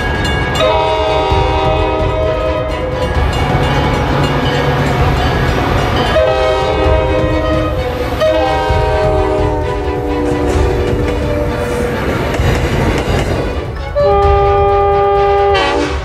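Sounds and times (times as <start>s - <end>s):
low rumble of moving train: 0.0s - 16.0s
locomotive air horn blasts: 0.6s - 3.0s, 6.0s - 11.6s, 14.0s - 16.0s.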